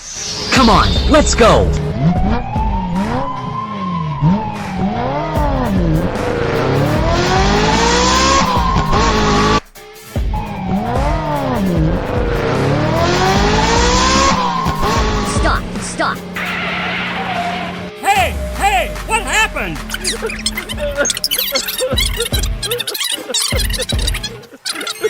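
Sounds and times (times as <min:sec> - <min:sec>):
background music: 0:00.0 - 0:25.0
cartoon sirens wailing: 0:01.1 - 0:09.6, 0:12.6 - 0:22.4.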